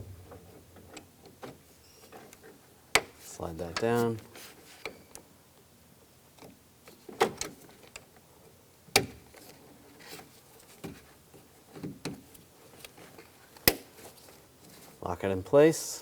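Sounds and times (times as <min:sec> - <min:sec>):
soft handling noises: 0:00.0 - 0:05.3, 0:09.3 - 0:15.4.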